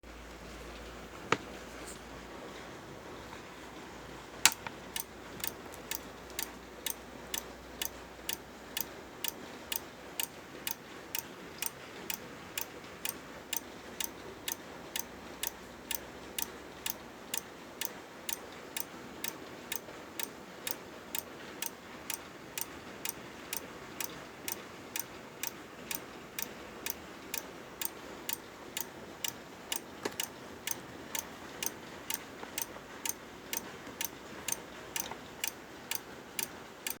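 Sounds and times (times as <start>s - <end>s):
power supply clicking: 4.5s - 10.8s, 27.8s - 37.0s.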